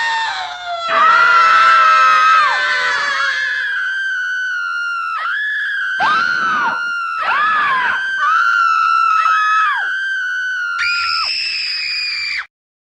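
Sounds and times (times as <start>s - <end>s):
high-pitched screams: 0.0s - 12.5s.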